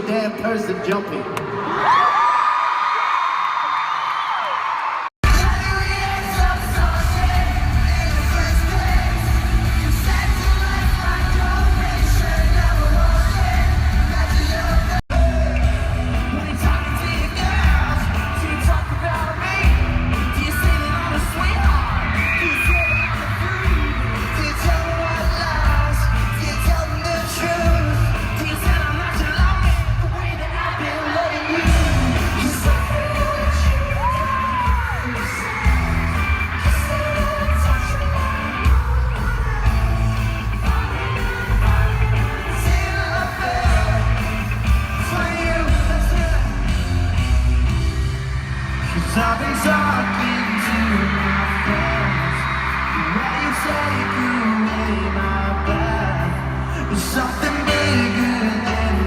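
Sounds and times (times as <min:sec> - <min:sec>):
crowd yelling: 0:01.3 - 0:59.0
live pop-rock band with singing: 0:04.6 - 0:59.0
heavy pulsing bass: 0:05.2 - 0:18.7.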